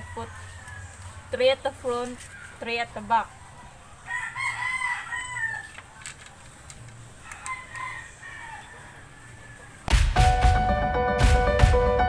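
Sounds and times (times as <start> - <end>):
rooster crowing: 0.0 - 1.2, 3.3 - 5.9, 7.2 - 9.9
music: 9.9 - 12.0.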